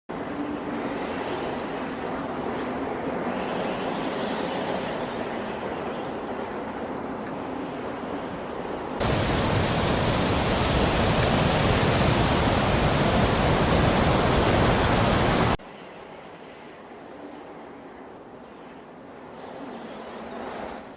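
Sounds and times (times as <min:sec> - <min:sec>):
snowstorm wind rushing: 0:08.4 - 0:15.6.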